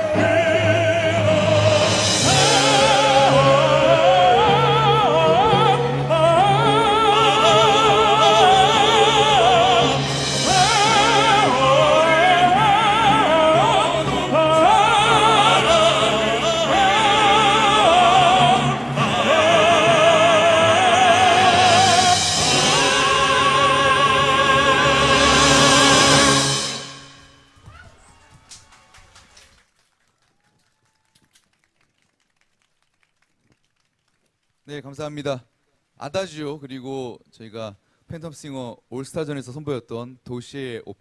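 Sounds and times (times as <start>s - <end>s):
male vocal quartet singing operatically: 0.0s - 27.0s
sustained instrumental accompaniment: 0.0s - 27.6s.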